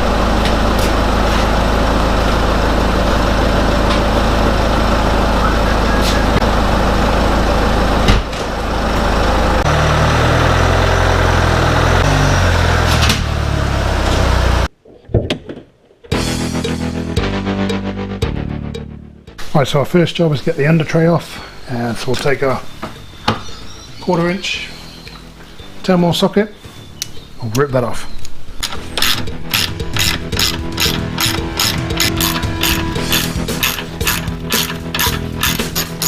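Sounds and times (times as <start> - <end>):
car engine running: 0.0 - 14.7, 28.8 - 36.0.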